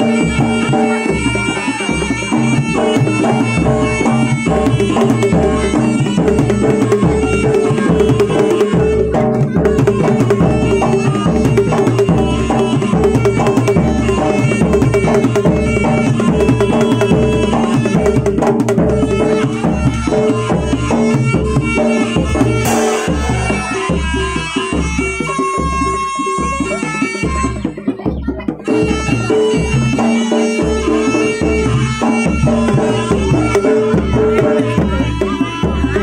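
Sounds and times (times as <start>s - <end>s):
hand drums beating: 0.0s - 36.0s
pitched percussion: 0.0s - 36.0s
long held note: 22.6s - 24.4s.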